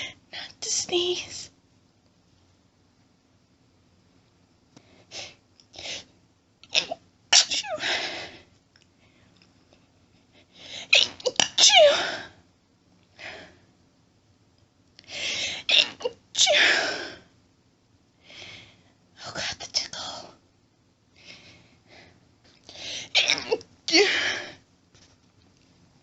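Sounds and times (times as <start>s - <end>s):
person sneezing: 23.0s - 24.6s.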